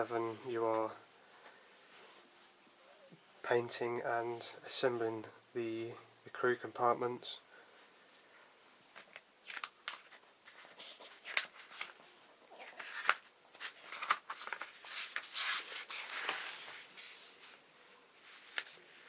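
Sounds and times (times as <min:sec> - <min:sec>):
paper rustling and crinkling: 0:08.9 - 0:17.6, 0:18.2 - 0:19.0.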